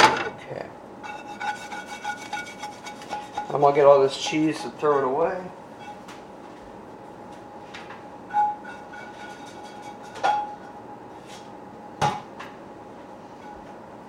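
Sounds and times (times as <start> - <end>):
faint steady whine: 0.1 - 14.0
pans and utensils clinking: 8.3 - 10.7.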